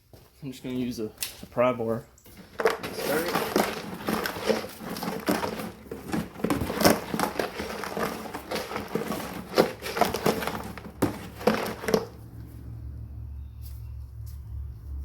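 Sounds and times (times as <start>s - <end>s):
metal bar scraping dry ice: 2.5s - 12.1s.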